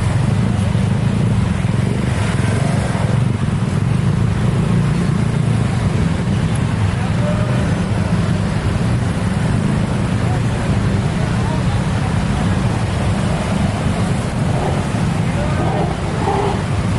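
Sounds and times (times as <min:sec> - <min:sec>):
low rumble of vehicles: 0:00.0 - 0:16.9.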